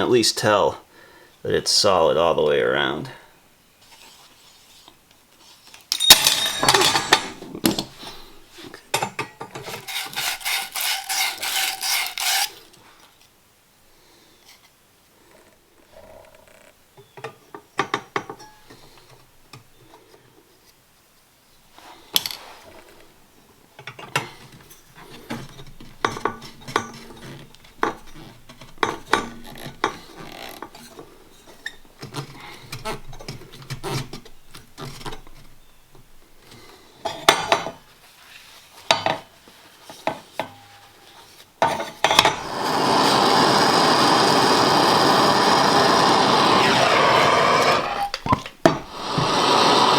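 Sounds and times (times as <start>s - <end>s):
metal fittings clinking: 5.9s - 7.9s
loud rushing hiss: 42.3s - 48.1s, 48.7s - 49.9s.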